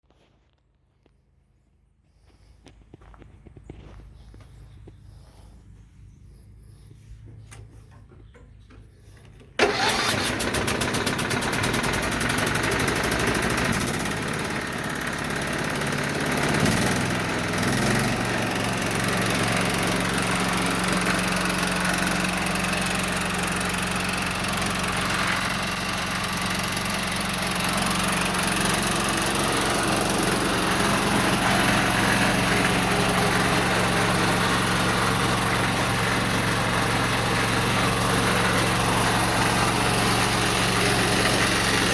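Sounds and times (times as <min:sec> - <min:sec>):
small engine starting and running: 0:08.9 - 0:41.9.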